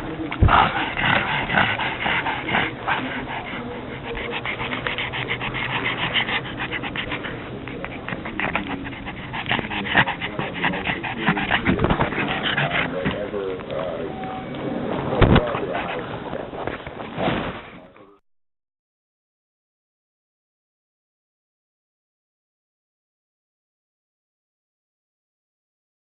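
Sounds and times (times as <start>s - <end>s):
dog panting noisily: 0.0s - 14.0s, 15.1s - 17.3s.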